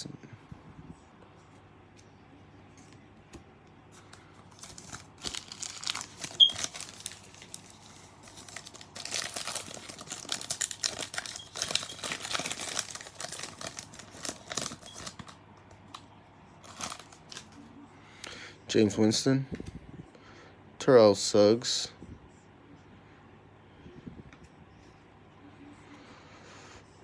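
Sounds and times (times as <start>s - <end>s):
wrapper crinkling and tearing: 4.4s - 15.4s, 16.6s - 17.6s.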